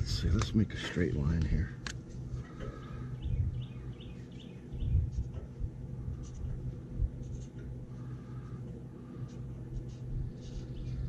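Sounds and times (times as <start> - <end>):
low steady hum: 0.0 - 11.0
marker scratching on sheet metal: 7.2 - 7.7, 9.2 - 11.0.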